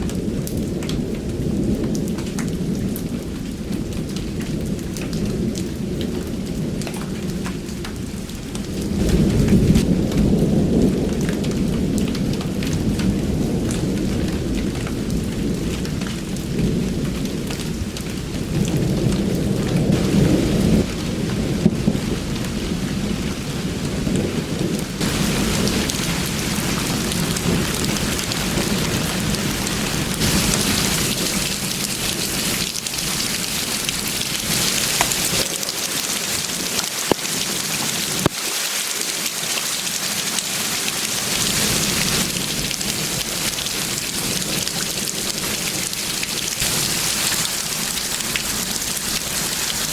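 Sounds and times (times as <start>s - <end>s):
thunder rumbling: 0.0s - 38.3s
heavy rain pouring: 0.0s - 49.9s.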